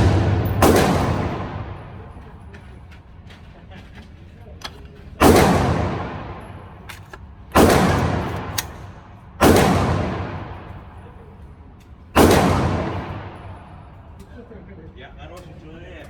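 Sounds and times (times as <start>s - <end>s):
rifle shots with long echo: 0.0s - 2.4s, 5.2s - 11.3s, 12.2s - 14.2s.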